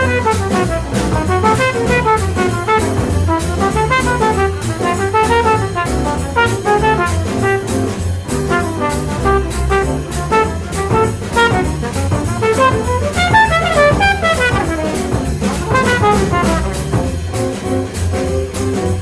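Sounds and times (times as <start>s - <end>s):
bass line: 0.0s - 19.0s
jazz trumpet solo: 0.0s - 19.0s.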